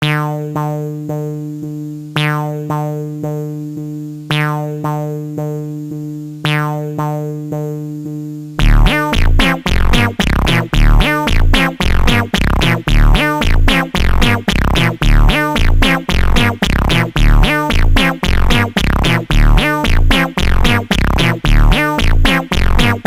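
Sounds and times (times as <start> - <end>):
plucked synthesizer pattern: 0.0 - 23.0
heavy bass beat: 8.6 - 23.0.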